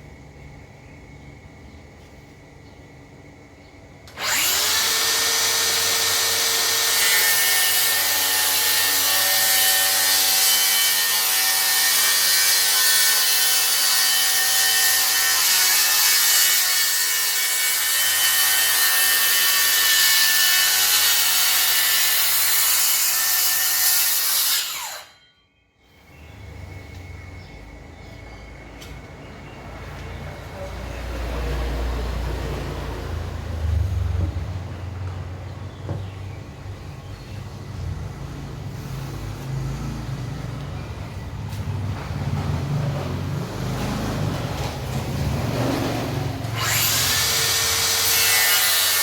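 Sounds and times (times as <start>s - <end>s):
circular saw cutting wood: 4.1s - 25.3s, 45.3s - 49.0s.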